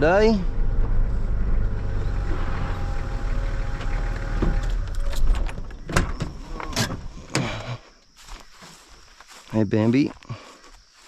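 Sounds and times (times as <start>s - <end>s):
vehicle engine with whine: 0.0s - 7.4s.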